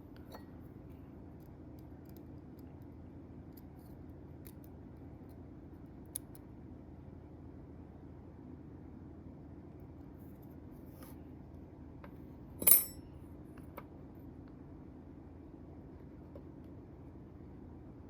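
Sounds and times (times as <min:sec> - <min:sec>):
steady low hum: 0:00.0 - 0:18.0
light clicks of small metal parts: 0:01.3 - 0:05.4, 0:06.1 - 0:06.5.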